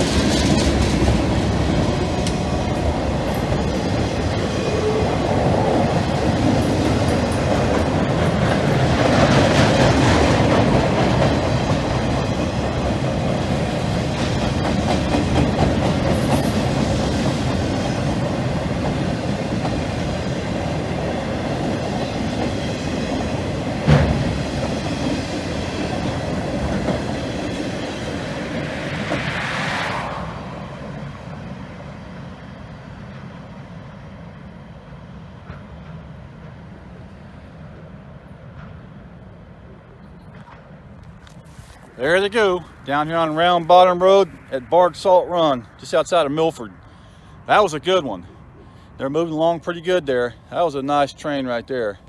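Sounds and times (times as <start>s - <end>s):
freight train wheels clattering: 0.0s - 29.2s.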